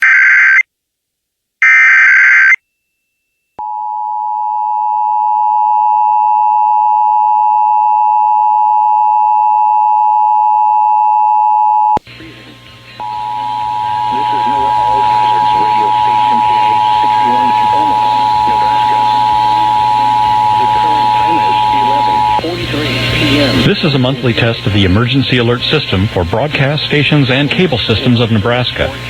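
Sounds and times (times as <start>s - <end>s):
low hum: 12.0s - 29.0s
faint voice speaking: 12.1s - 25.0s
two-tone attention signal: 13.0s - 22.5s.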